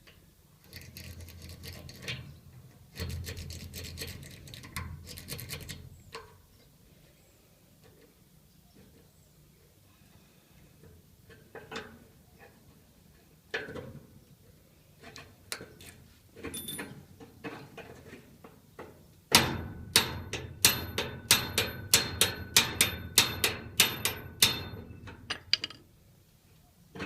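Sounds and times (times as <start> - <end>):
metal taps on padlock: 20.3 - 25.8.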